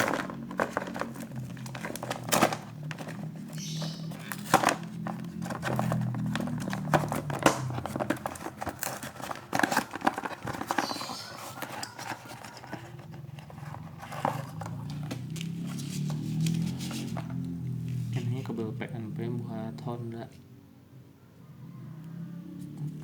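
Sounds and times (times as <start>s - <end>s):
plastic packaging crinkling: 0.0s - 17.4s.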